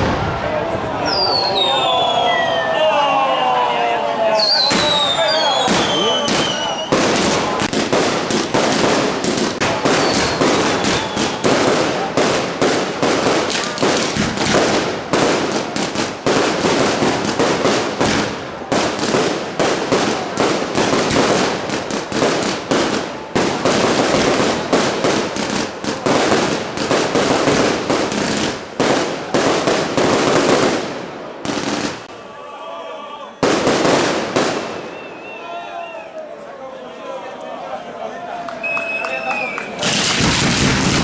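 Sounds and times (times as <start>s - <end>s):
voices: 0.0s - 16.1s, 32.1s - 34.0s, 34.9s - 40.2s
fireworks bangs and crackles: 0.0s - 32.2s, 33.4s - 35.4s, 38.5s - 41.0s.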